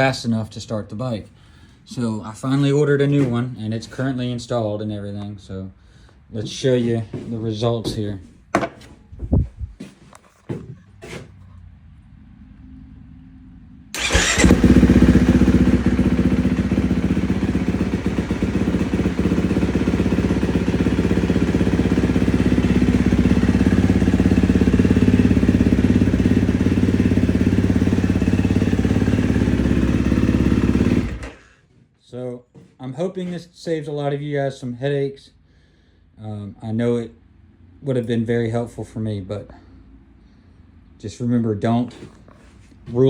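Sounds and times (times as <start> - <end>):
electric starter cranking: 14.0 - 15.7, 30.8 - 31.5
motorcycle engine running: 14.0 - 31.5.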